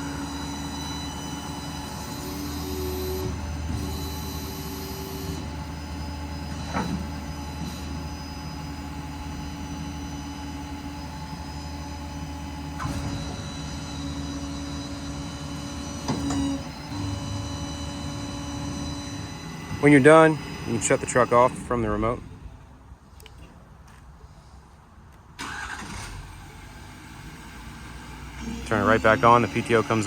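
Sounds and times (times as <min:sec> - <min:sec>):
diesel engine idling: 0:00.0 - 0:23.0, 0:25.4 - 0:30.0
hydraulic system hum and whine: 0:00.0 - 0:23.6, 0:26.4 - 0:30.0
short clunks: 0:16.0 - 0:17.0.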